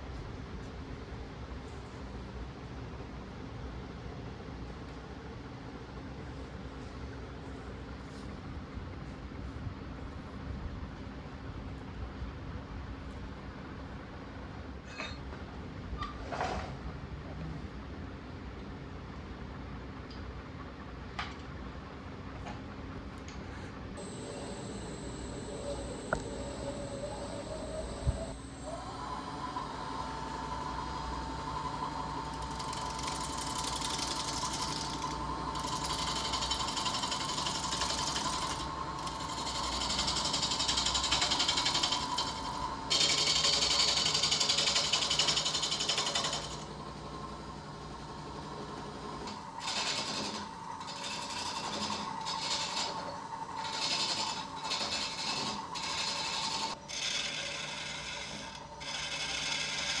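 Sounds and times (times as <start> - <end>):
thin whine: 24.0 - 37.2.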